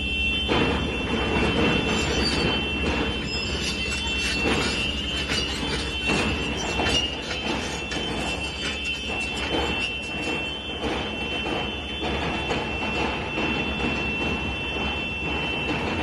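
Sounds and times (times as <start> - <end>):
diesel machinery rumbling: 0.0 - 16.0
clanks and knocks: 0.4 - 16.0.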